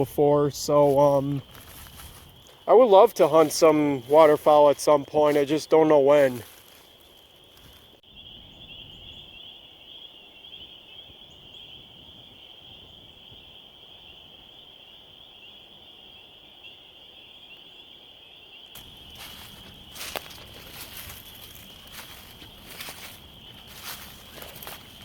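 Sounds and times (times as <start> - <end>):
faint wind rumble: 0.0 - 2.5, 18.8 - 25.0
footsteps in dry brush: 0.0 - 8.0, 18.8 - 25.0
frogs calling: 0.0 - 25.0.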